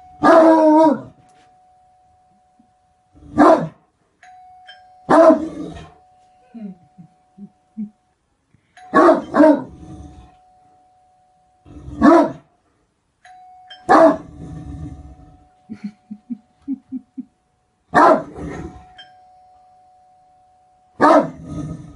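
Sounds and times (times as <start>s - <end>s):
large dog barking: 0.2s - 1.2s, 3.3s - 3.8s, 5.1s - 5.8s, 8.9s - 9.8s, 12.0s - 12.5s, 13.9s - 14.3s, 17.9s - 18.7s, 21.0s - 21.4s.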